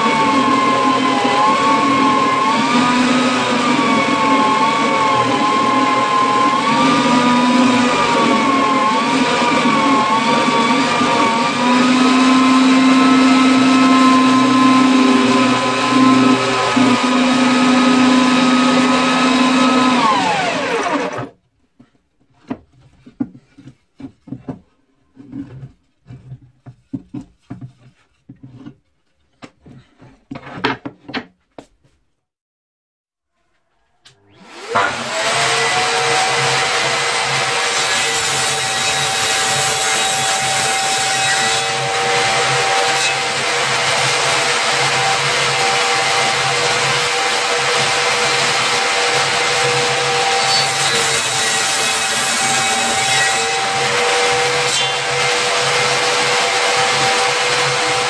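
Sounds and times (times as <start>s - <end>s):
power tool motor whine: 0.0s - 21.4s, 34.2s - 58.0s.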